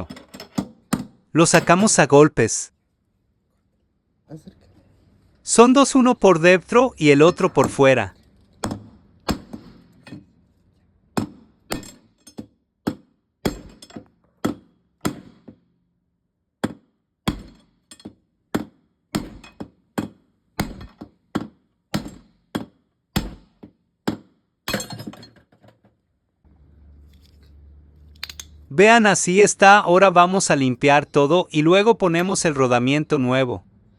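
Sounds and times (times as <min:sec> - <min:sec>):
hammer striking metal bearing: 0:11.2 - 0:15.7, 0:16.6 - 0:24.9.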